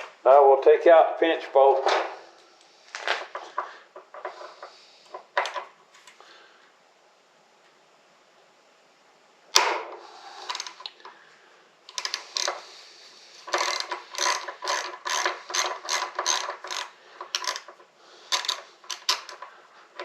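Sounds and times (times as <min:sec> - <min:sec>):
sharp snap: 0:09.5 - 0:10.0
ratchet wrench clicking: 0:11.9 - 0:12.6, 0:13.4 - 0:19.5.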